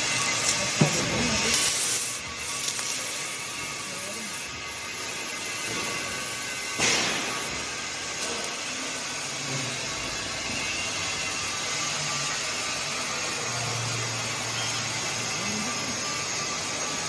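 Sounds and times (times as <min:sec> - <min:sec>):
laser cutting machine hissing: 0:00.0 - 0:17.0.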